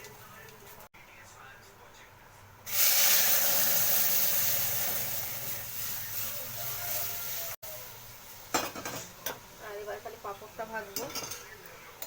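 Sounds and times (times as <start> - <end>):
pot sizzling on the stove: 2.7 - 12.0.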